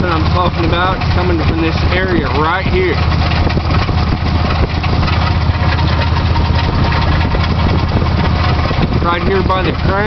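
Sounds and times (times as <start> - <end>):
engine idling: 0.0 - 10.0
fast engine rattle: 0.0 - 10.0.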